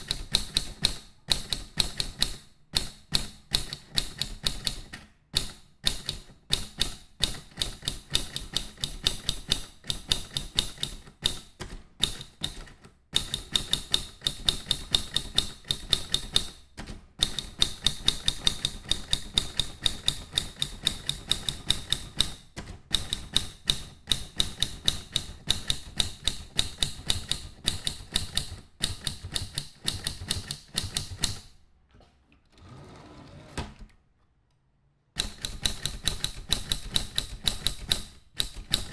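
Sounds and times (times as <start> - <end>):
mechanical typewriter key strikes: 7.6 - 31.5, 35.2 - 38.9.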